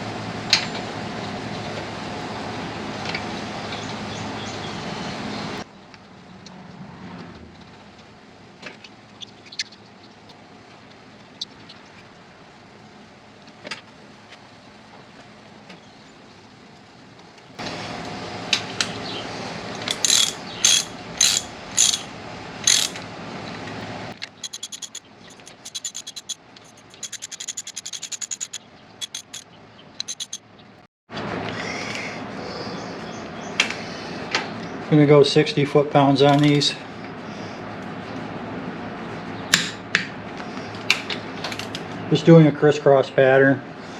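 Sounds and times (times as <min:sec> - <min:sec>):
ratchet wrench clicking: 0:19.9 - 0:23.0, 0:24.2 - 0:29.4, 0:30.0 - 0:30.4.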